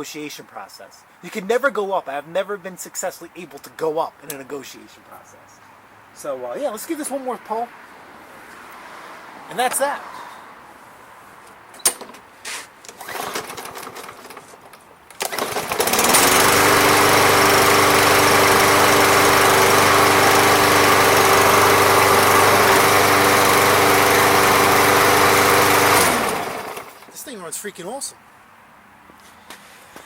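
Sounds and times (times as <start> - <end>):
lawn mower engine running: 12.9 - 14.5, 15.1 - 27.2.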